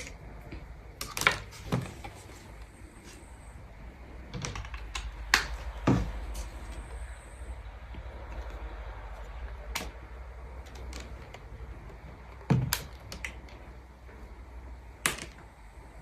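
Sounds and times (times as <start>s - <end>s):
low steady hum: 0.0s - 16.0s
sharp clicks and knocks: 4.3s - 6.9s, 9.6s - 14.3s.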